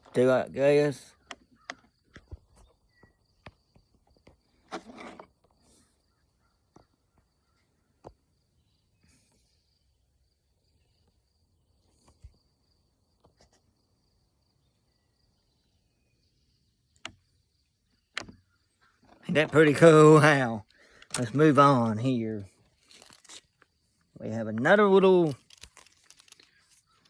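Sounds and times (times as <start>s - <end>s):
brief rustle: 25.3s - 27.0s.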